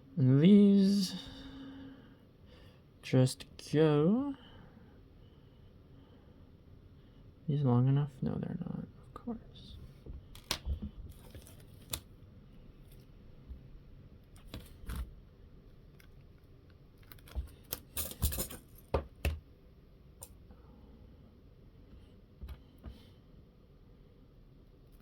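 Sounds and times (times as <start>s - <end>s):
small parts clicking on a workbench: 17.0s - 19.4s.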